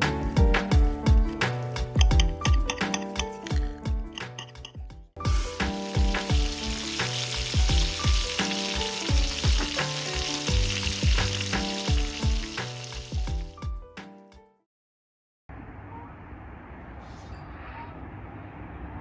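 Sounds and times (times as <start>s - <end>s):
background music with beat: 0.0s - 14.4s
food sizzling in hot oil: 5.3s - 13.6s.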